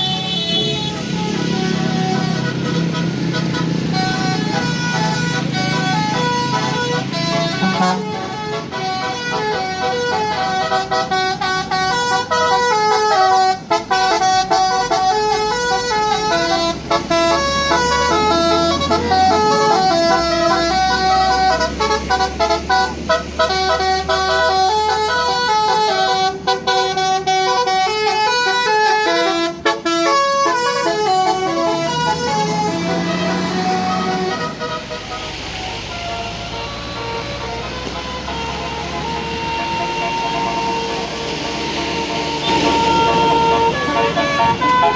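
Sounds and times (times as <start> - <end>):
low engine drone: 0.0 - 12.0, 30.2 - 44.9
musical air horn melody: 0.0 - 44.9.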